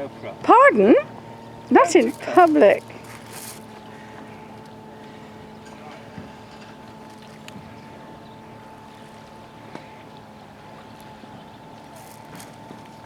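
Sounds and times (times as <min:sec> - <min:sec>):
steady two-tone hum: 0:00.0 - 0:13.0
light clicks and rustles: 0:02.0 - 0:04.8, 0:05.6 - 0:07.9, 0:10.9 - 0:13.0.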